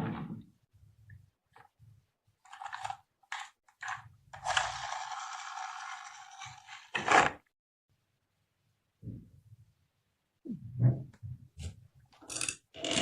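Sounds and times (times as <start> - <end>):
marbles rolling rattle: 4.4 - 6.7.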